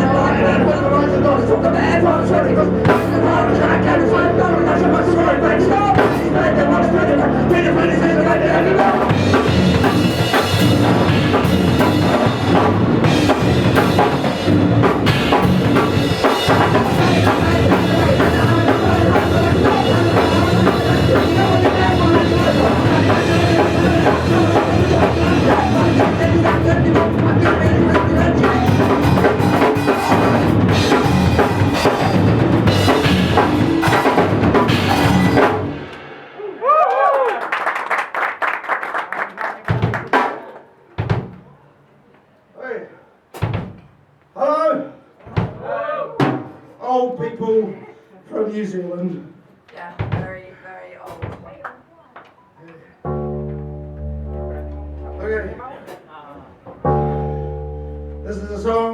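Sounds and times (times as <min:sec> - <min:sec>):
bass guitar: 0:00.0 - 0:36.2, 0:53.0 - 0:55.8, 0:56.6 - 0:58.9
drum kit: 0:02.8 - 0:03.6, 0:05.9 - 0:06.7, 0:08.3 - 0:36.9, 0:39.6 - 0:41.7, 0:43.3 - 0:44.1, 0:45.3 - 0:46.7, 0:49.9 - 0:51.6.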